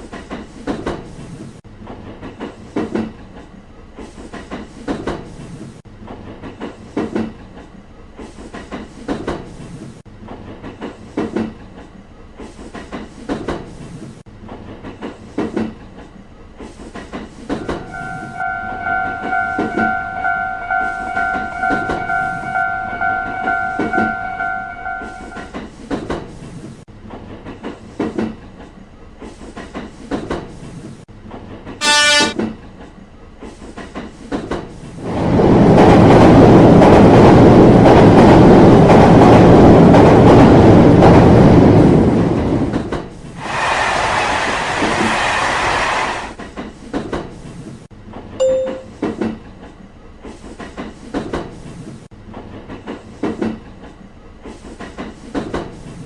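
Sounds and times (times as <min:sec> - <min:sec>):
rail clicks: 0:00.0 - 0:35.0, 0:46.2 - 0:56.0
train horn blast: 0:17.8 - 0:25.5, 0:31.8 - 0:32.5
train rushing past: 0:31.8 - 0:32.8, 0:34.9 - 0:46.6.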